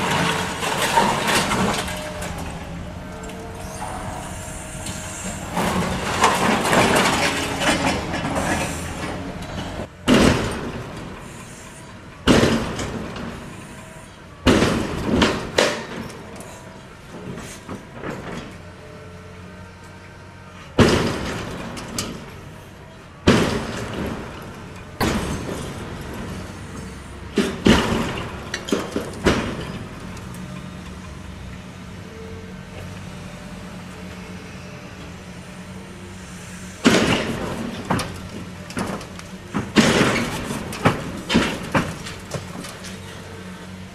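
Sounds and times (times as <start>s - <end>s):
debris crashing down: 0.0s - 11.2s, 12.2s - 13.4s, 23.2s - 26.4s, 27.4s - 30.0s, 36.8s - 42.8s.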